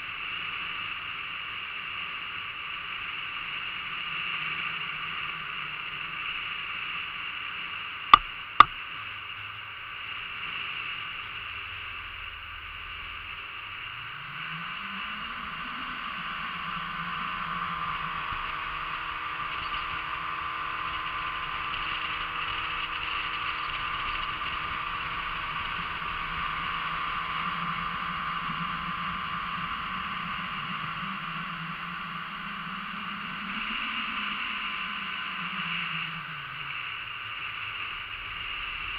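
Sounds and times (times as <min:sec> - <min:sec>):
outboard motor running: 0:14.7 - 0:38.9.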